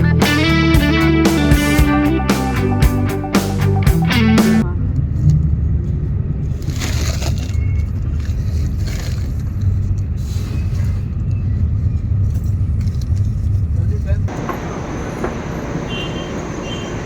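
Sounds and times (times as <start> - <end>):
guitar music: 0.0 - 4.7
vehicle rumble: 0.0 - 17.0
road hiss: 14.3 - 17.0.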